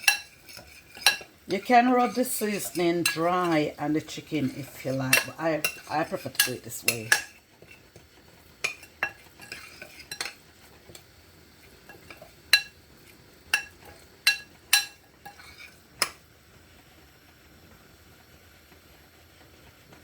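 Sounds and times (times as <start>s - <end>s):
spoon clinking against bowl: 5.1s - 7.4s, 8.6s - 10.4s, 13.6s - 15.6s.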